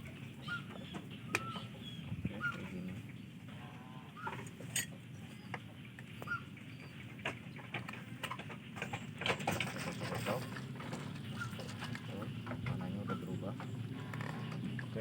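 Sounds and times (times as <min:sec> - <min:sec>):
short bird calls: 0:00.1 - 0:07.2, 0:11.2 - 0:12.3
scattered knocks and clicks: 0:06.9 - 0:15.0.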